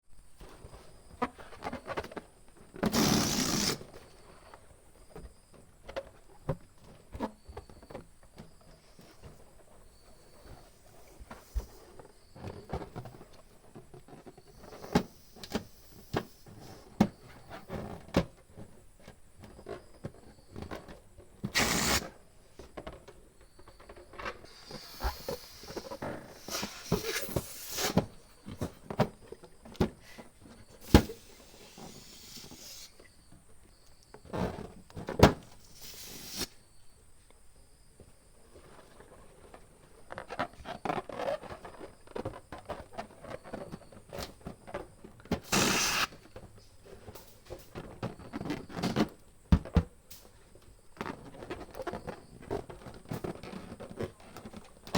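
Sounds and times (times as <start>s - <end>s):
rubber balloon squeak: 2.8s - 4.0s, 21.5s - 22.1s, 24.5s - 28.2s, 30.8s - 33.0s, 35.7s - 36.5s, 45.5s - 46.3s
hand pump hissing: 2.9s - 3.8s, 21.5s - 22.1s, 24.5s - 28.0s, 30.8s - 33.0s, 35.7s - 36.5s, 45.4s - 46.2s.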